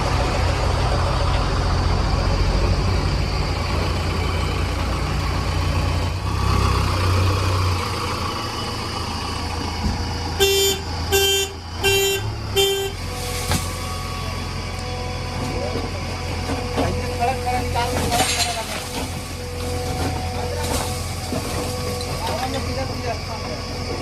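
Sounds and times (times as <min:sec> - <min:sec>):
heavy vehicle engine rumbling: 0:00.0 - 0:24.0
vehicle horn toots: 0:10.4 - 0:13.2.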